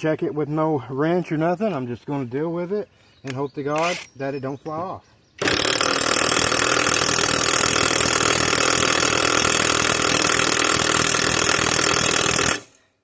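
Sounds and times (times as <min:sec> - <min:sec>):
power tool running: 0:05.4 - 0:12.8.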